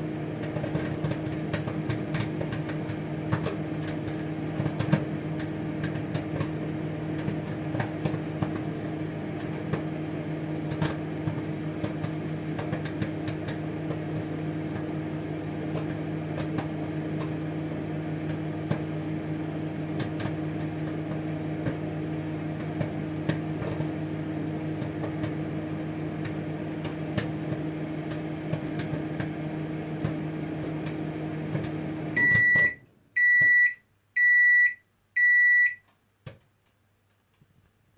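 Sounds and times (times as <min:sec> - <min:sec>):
microwave oven humming: 0:00.0 - 0:36.1
popcorn popping: 0:00.1 - 0:19.0, 0:19.8 - 0:24.0, 0:24.6 - 0:32.7
high beeps: 0:32.2 - 0:35.8.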